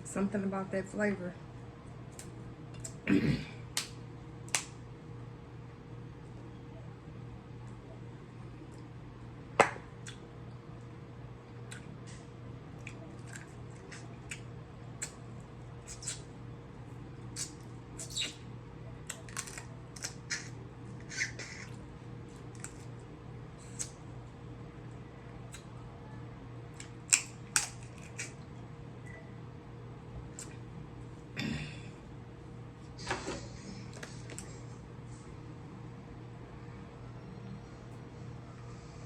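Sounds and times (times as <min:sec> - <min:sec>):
steady low hum: 0:00.0 - 0:39.0
seafood shells cracking: 0:19.1 - 0:20.2, 0:26.8 - 0:28.3.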